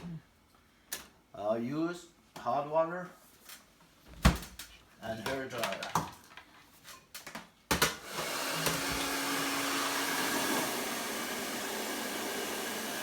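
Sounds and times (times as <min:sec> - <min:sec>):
hair dryer blowing: 0:08.0 - 0:13.0.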